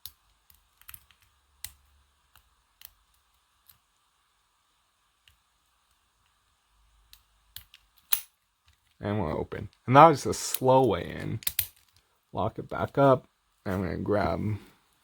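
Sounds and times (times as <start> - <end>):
lock pick clicking in padlock: 11.4 - 11.8.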